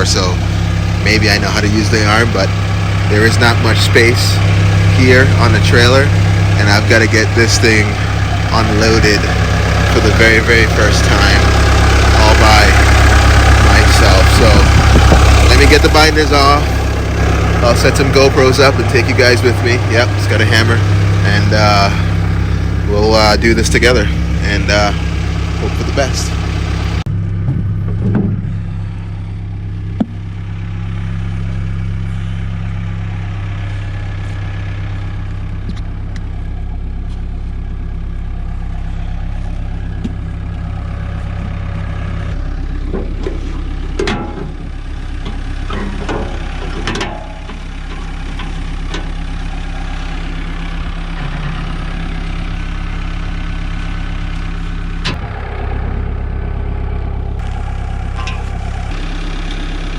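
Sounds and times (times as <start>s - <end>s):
engine idling: 0.0s - 59.9s
metallic clanks: 42.8s - 49.4s, 57.9s - 59.4s.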